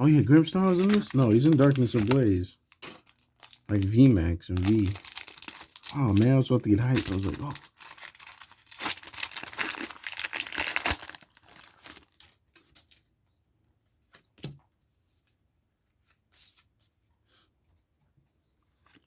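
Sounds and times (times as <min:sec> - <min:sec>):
foil wrapper tearing and crinkling: 0:00.2 - 0:12.9.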